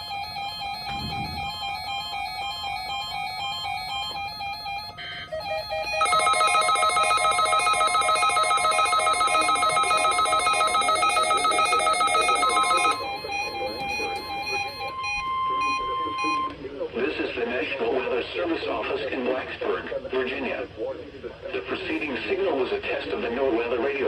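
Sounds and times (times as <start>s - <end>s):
loud steady alarm tone: 0.0s - 16.6s.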